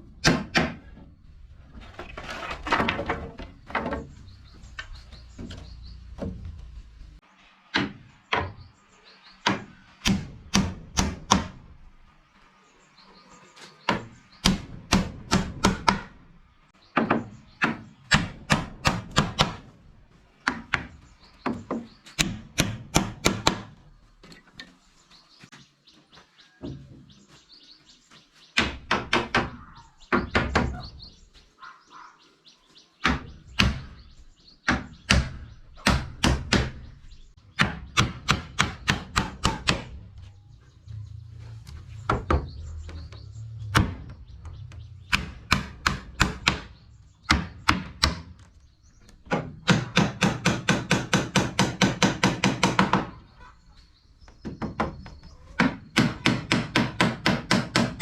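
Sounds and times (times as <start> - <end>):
hammer striking wood: 0.2 - 0.9, 9.4 - 11.7, 13.9 - 16.2, 17.0 - 19.7, 20.4 - 23.8, 33.0 - 34.0, 34.7 - 36.9, 37.6 - 40.0, 43.7 - 48.5, 49.3 - 53.1, 55.6 - 58.0.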